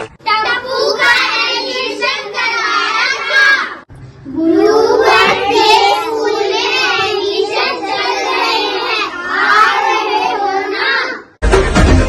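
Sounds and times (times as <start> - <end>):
child singing in high voice: 4.3 - 11.3.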